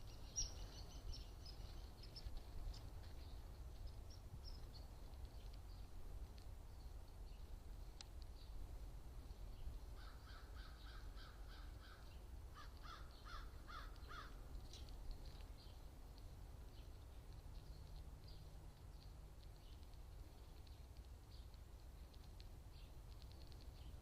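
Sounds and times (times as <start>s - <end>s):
low outdoor rumble: 0.0s - 24.0s
faint bird calls: 9.5s - 14.4s.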